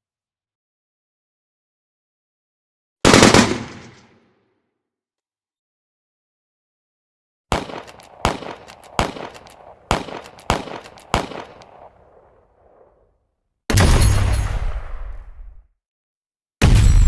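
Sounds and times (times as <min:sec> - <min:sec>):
echoing gunshots: 0:03.0 - 0:04.3, 0:07.5 - 0:13.1.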